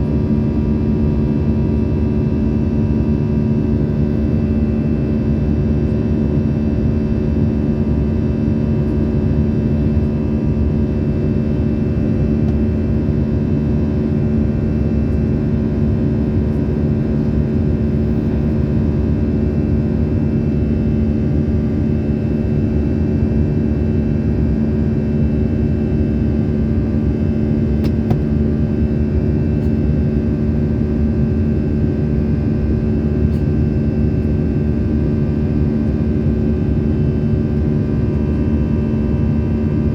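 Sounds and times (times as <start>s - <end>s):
airliner cabin drone: 0.0s - 39.9s
strong steady hum: 24.2s - 39.9s.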